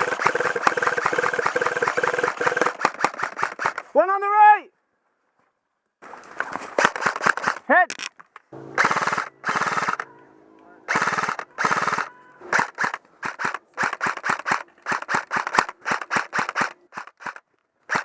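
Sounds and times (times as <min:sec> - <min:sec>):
airsoft gun bursts: 0:00.0 - 0:04.0, 0:06.8 - 0:07.7, 0:08.8 - 0:10.1, 0:10.9 - 0:18.0.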